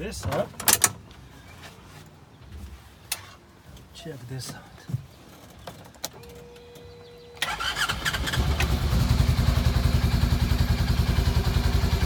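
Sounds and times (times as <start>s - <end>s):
engine starter cranking: 7.4s - 9.2s
engine pulsing idle: 7.4s - 12.0s.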